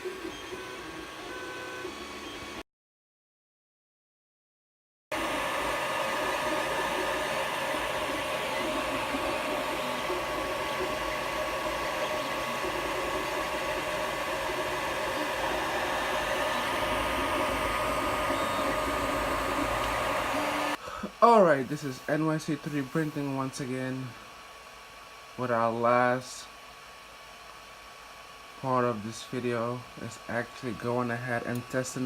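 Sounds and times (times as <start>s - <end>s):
printer cooling fans whirring: 0.0s - 2.6s, 5.1s - 32.0s
constant high tone: 5.6s - 21.4s.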